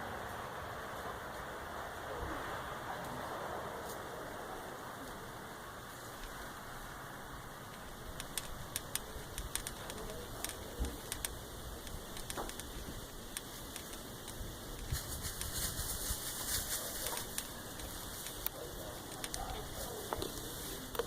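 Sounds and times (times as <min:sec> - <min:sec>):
steady hiss: 0:00.0 - 0:21.0
light clicks and taps: 0:07.7 - 0:15.7, 0:17.0 - 0:21.0.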